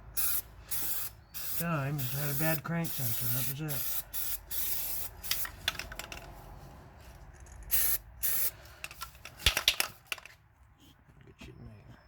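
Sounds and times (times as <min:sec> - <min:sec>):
spray paint can hissing: 0:00.2 - 0:06.1, 0:07.7 - 0:08.6.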